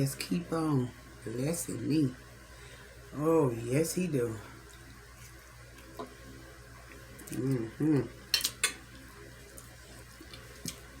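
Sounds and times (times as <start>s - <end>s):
person humming: 7.3s - 8.2s
cutlery clinking against a dish: 8.3s - 8.8s.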